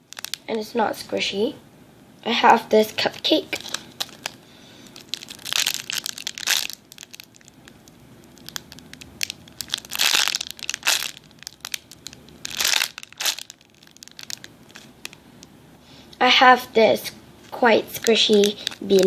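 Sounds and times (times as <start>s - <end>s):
crinkling plastic packaging: 0.0s - 0.7s, 3.0s - 15.5s, 17.4s - 19.0s.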